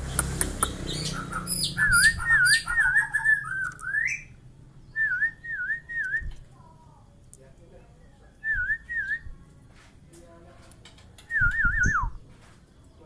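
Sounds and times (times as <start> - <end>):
bird harsh calls: 0.0 - 4.4
bird whistled notes: 0.0 - 6.3.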